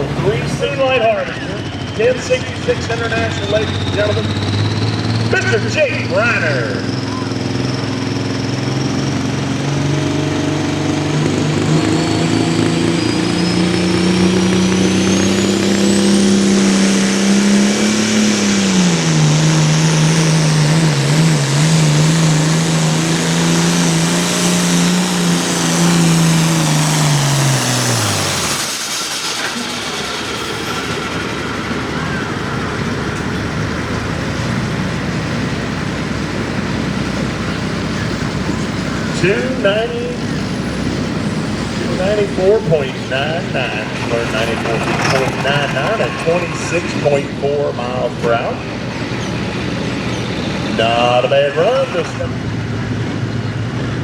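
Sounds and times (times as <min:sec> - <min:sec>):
tractor diesel engine under load: 0:00.0 - 0:54.0
steady rushing noise: 0:41.0 - 0:48.9.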